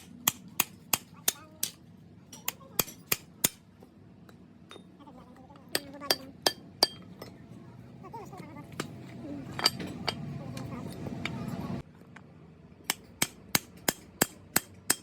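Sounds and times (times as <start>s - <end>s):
hammer striking metal: 0.0s - 3.6s, 5.8s - 7.0s, 12.9s - 15.0s.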